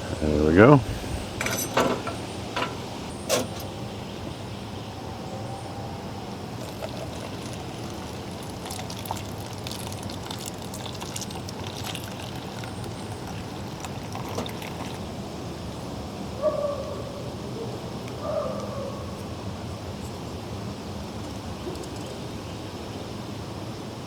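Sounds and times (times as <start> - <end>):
water trickling through coffee filter: 6.5 - 15.4, 20.8 - 22.6.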